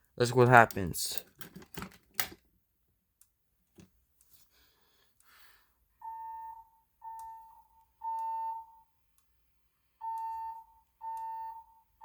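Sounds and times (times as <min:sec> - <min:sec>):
fire alarm beeping: 0:06.0 - 0:08.9, 0:10.0 - 0:12.0.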